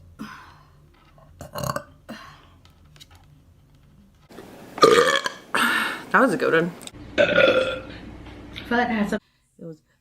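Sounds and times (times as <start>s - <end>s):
person burping: 1.4s - 2.3s, 4.8s - 5.7s, 7.2s - 7.9s.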